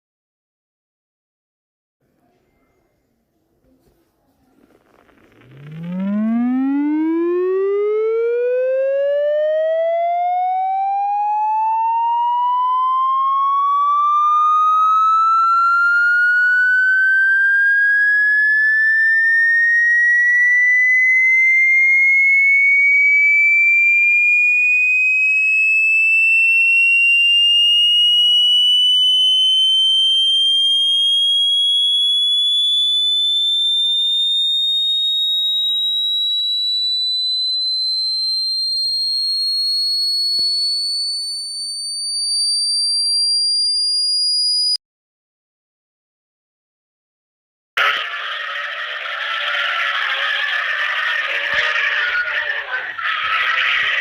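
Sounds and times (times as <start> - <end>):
rising electronic tone: 5.0 - 44.8.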